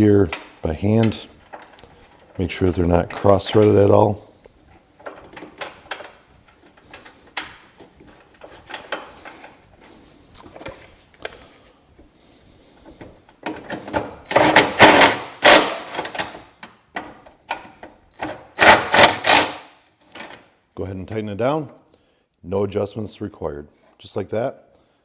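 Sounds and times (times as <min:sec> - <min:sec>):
impact wrench rattling: 0:13.4 - 0:19.8.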